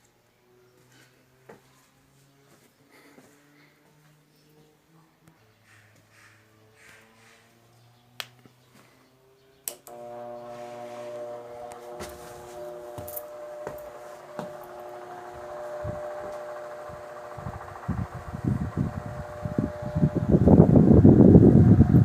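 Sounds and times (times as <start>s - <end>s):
fan motor humming: 9.6s - 22.0s
fan switch click: 9.7s - 10.3s
fan blades moving air: 9.8s - 22.0s.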